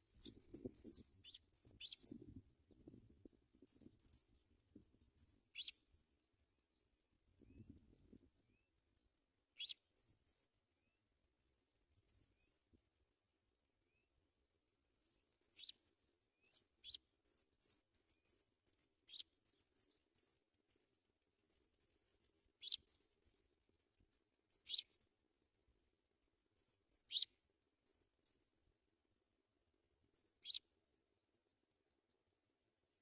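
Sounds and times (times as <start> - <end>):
sharp bird calls: 0.0 - 2.2, 24.6 - 25.0, 26.6 - 27.3.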